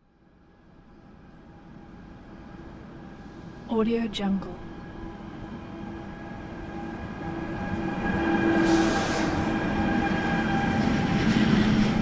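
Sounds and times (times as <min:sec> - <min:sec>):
freight train passing: 0:00.5 - 0:12.0.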